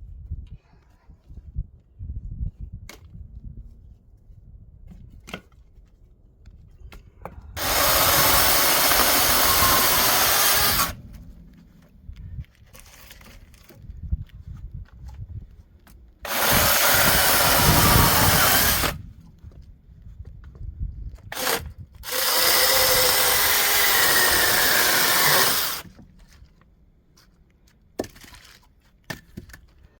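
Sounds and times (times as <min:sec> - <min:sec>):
power saw cutting firewood: 0:07.6 - 0:11.1, 0:16.2 - 0:19.0, 0:21.3 - 0:26.0.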